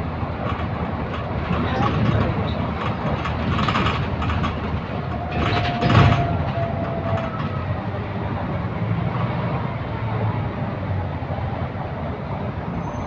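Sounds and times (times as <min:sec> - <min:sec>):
bus engine and road noise: 0:00.0 - 0:13.0
rattles: 0:00.4 - 0:07.7
faint squeal: 0:05.2 - 0:07.8.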